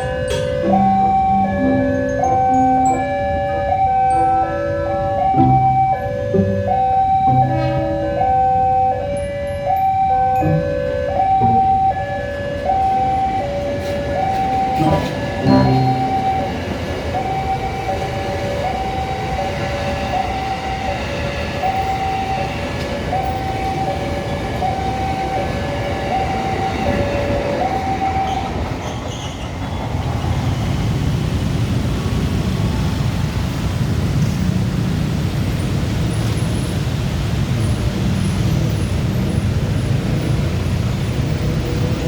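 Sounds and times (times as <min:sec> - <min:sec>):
multi-tone vehicle horn tune: 0:00.0 - 0:18.0
heavy engine rumble: 0:00.0 - 0:28.3
traffic noise: 0:00.0 - 0:42.0.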